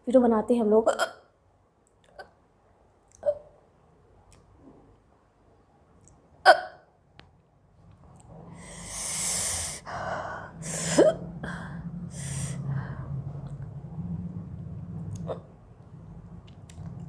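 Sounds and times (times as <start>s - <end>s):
woman hiccuping: 3.2s - 3.5s, 6.4s - 6.9s
woman breathing sharply: 8.6s - 13.3s.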